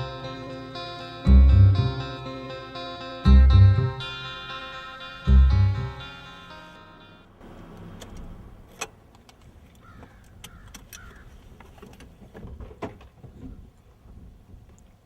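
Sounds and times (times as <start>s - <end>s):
guitar music: 0.0s - 7.4s
vehicle rumble: 3.2s - 14.1s.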